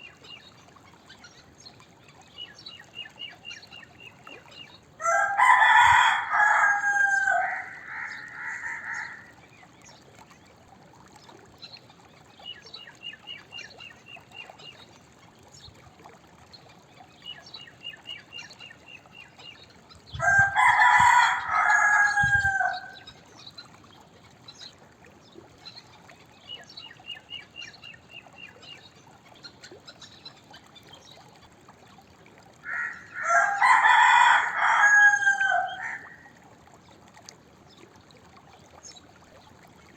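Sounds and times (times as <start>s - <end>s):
rooster crowing: 5.0s - 9.3s, 20.2s - 23.0s, 32.7s - 36.2s.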